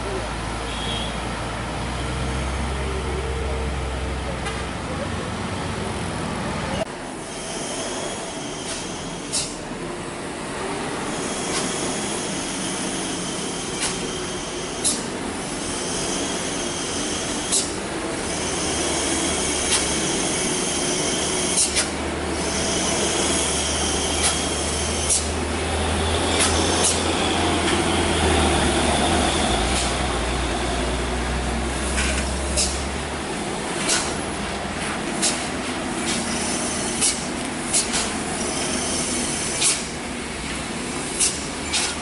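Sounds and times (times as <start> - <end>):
traffic noise: 0.0 - 42.0
truck diesel engine: 0.0 - 42.0.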